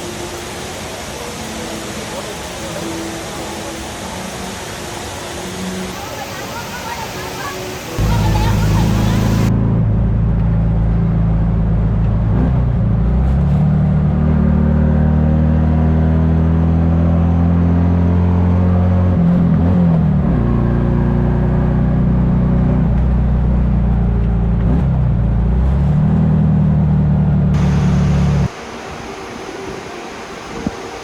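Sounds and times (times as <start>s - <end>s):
car engine running: 8.0s - 12.3s, 27.6s - 28.5s.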